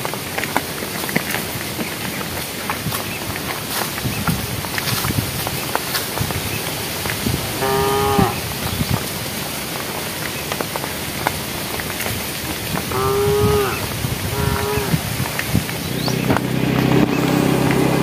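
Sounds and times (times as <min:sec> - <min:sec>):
steady hiss: 0:00.0 - 0:18.0
cattle mooing: 0:07.6 - 0:08.5, 0:12.9 - 0:15.1.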